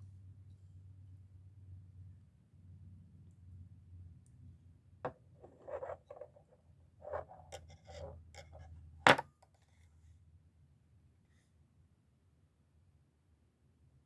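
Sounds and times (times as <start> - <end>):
light rubbing and scraping: 5.1 - 9.2.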